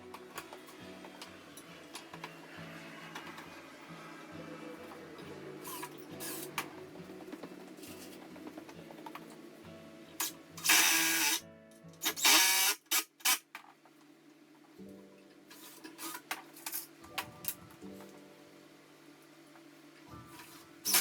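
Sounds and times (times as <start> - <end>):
background music: 0.0 - 12.9, 14.6 - 21.0
power drill driving screws: 10.6 - 11.4, 12.0 - 13.4.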